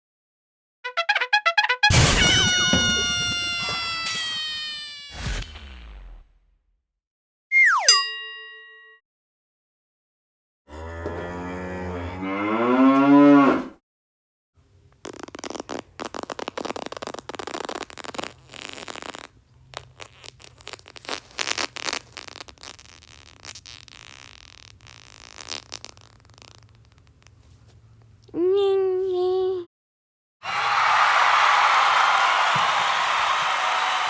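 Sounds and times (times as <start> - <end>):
cow mooing: 10.7 - 13.8.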